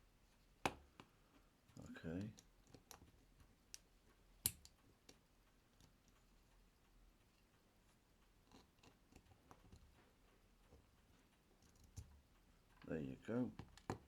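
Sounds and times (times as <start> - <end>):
small metal tools clicking: 8.4 - 10.0.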